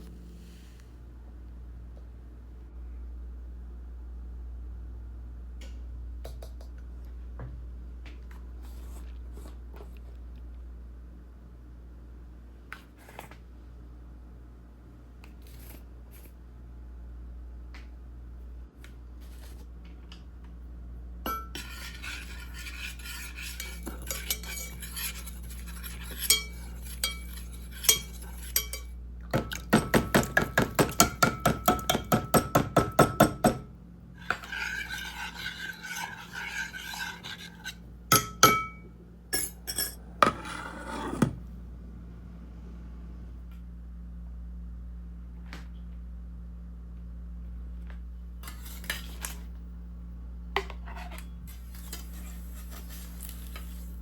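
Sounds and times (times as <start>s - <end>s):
utensils scraping dishes: 21.3s - 28.9s, 34.2s - 38.8s, 39.4s - 41.4s.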